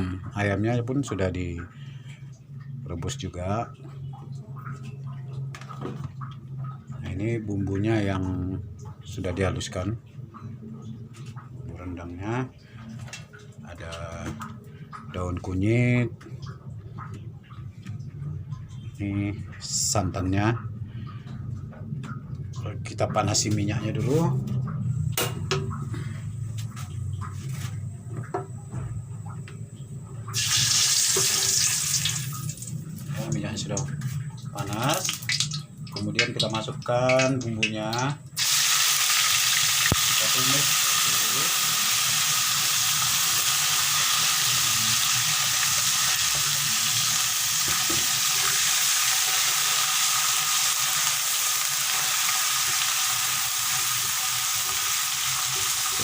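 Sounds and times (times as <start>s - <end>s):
steady low hum: 0.0s - 31.4s
loud steady hiss: 38.4s - 53.5s.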